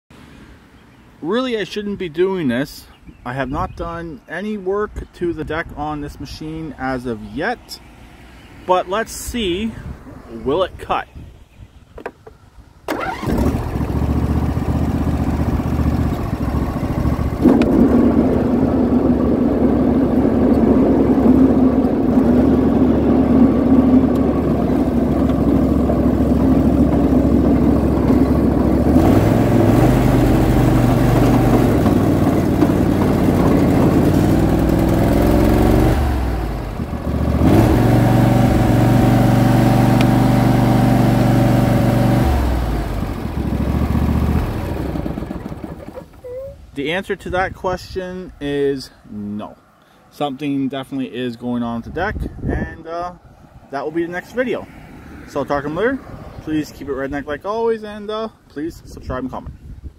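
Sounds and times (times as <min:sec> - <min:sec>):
lawn tractor engine running: 0:12.9 - 0:46.2.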